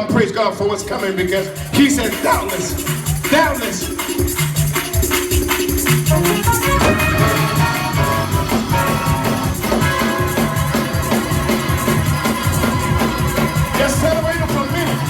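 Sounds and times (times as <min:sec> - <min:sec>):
organ chords: 0:00.0 - 0:15.0
steady drum beat: 0:00.0 - 0:15.0
bass line: 0:05.9 - 0:15.0.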